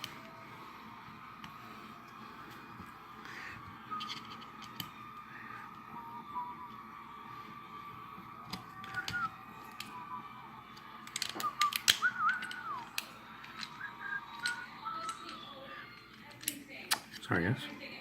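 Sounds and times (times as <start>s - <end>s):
person whistling: 5.9s - 6.8s, 8.7s - 10.5s, 11.3s - 13.0s, 13.7s - 15.8s.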